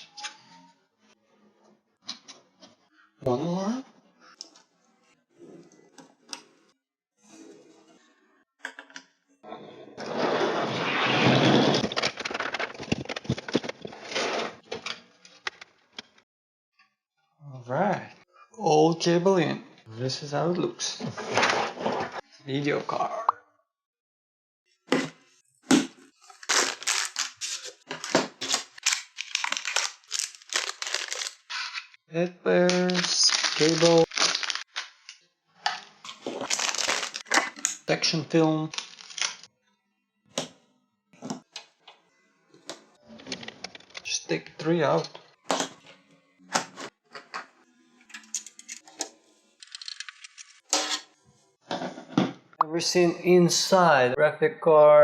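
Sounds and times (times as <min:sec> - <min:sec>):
packaging scraping and rustling: 0:10.1 - 0:14.7, 0:26.2 - 0:32.0, 0:32.7 - 0:35.1, 0:36.1 - 0:37.8, 0:38.7 - 0:39.5
small metal parts clinking: 0:49.6 - 0:50.6.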